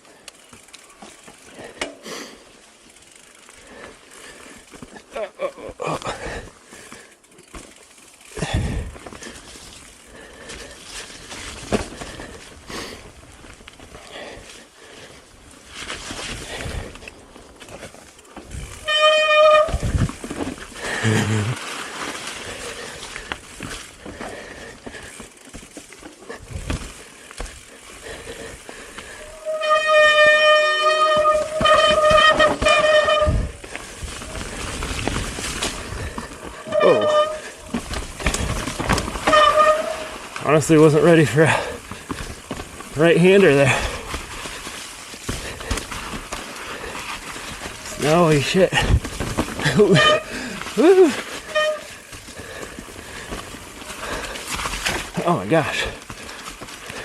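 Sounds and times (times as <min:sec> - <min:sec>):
bike rattling on rough trail: 0:00.0 - 0:57.0
bike disc brakes squealing: 0:18.5 - 0:20.6, 0:29.1 - 0:34.8, 0:35.7 - 0:40.9, 0:49.6 - 0:52.1.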